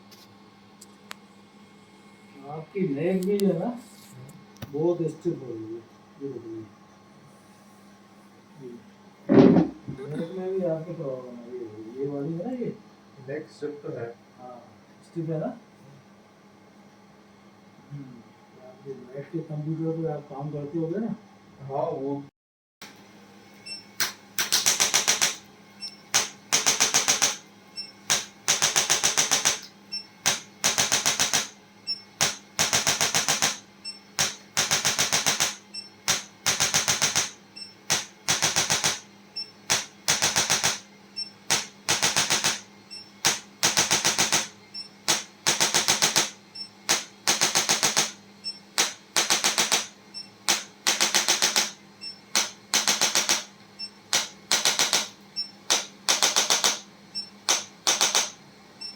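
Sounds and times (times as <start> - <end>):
percussion device clicking taps: 50.5 - 51.8, 52.4 - 53.5, 54.1 - 55.1, 55.7 - 56.9, 57.5 - 58.4.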